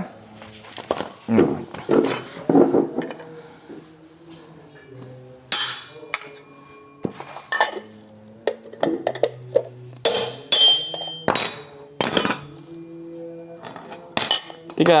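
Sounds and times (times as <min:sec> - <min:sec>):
metal tools clinking: 0:05.5 - 0:15.0.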